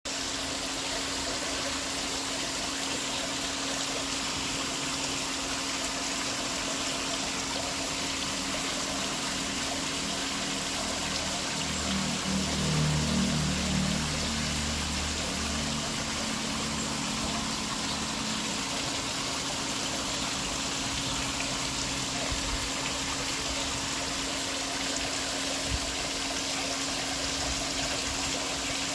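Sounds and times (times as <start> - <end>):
waterfall rushing: 0.1 - 28.9
low hum: 8.4 - 28.5.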